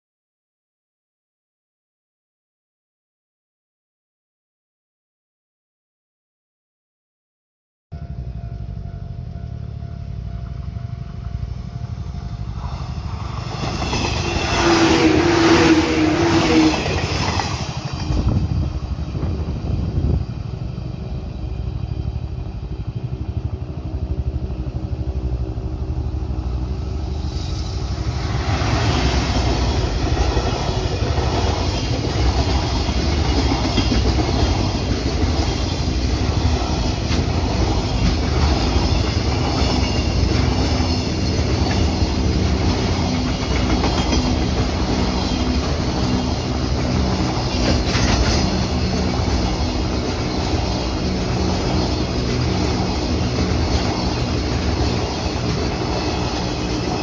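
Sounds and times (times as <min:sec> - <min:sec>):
train passing: 0:08.0 - 0:57.0
wheels clacking over rail joints: 0:29.4 - 0:57.0.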